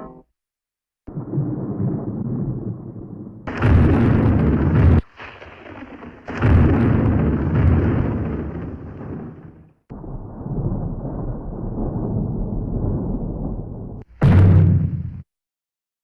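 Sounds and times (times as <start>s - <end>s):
low rumbling crash: 6.0s - 15.3s
loud smashes: 14.2s - 15.2s.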